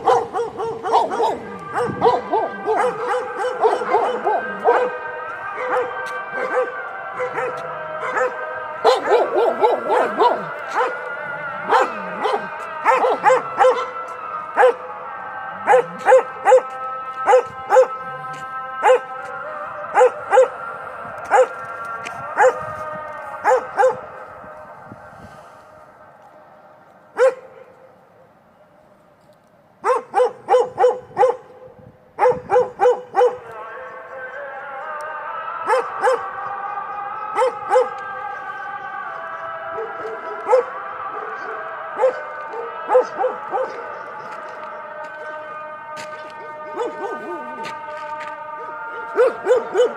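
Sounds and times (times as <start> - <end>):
dog barking: 0.0 - 5.0, 5.6 - 11.0, 11.7 - 14.0, 14.6 - 14.8, 15.7 - 16.7, 20.0 - 20.5, 22.4 - 22.6, 23.4 - 24.0, 27.2 - 27.6, 29.8 - 31.5, 32.2 - 33.4, 35.7 - 36.3, 37.4 - 38.0, 39.8 - 40.8, 42.0 - 43.8, 46.8 - 47.5, 49.0 - 49.9.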